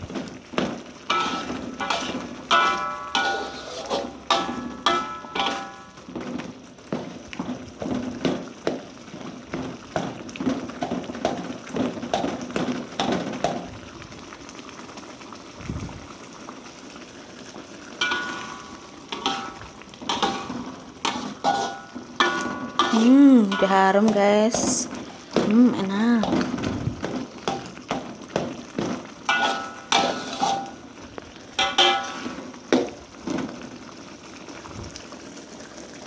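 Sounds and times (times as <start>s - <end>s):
fish sizzling in a pan: 0.0s - 36.0s
metal spatula scraping a pan: 0.3s - 6.4s, 17.9s - 25.4s, 26.2s - 33.6s
spatula clanking against pan: 1.1s - 6.1s, 18.0s - 25.5s, 27.4s - 28.6s, 29.3s - 30.9s, 31.6s - 32.9s.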